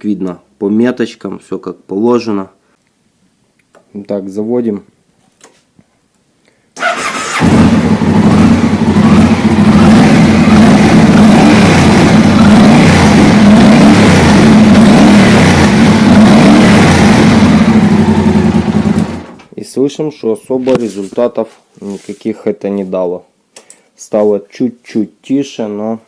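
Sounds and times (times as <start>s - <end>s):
motorcycle engine starting and idling: 6.8s - 19.5s.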